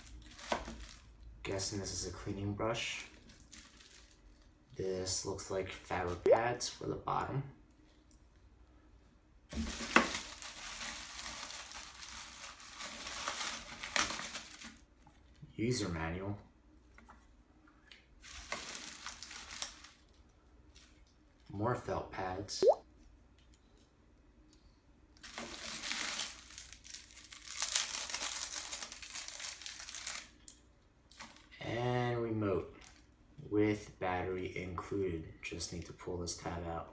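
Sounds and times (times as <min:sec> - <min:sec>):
plastic packaging crinkling: 0:00.0 - 0:01.3, 0:02.8 - 0:04.6, 0:09.5 - 0:15.0, 0:18.2 - 0:21.5, 0:25.2 - 0:30.5.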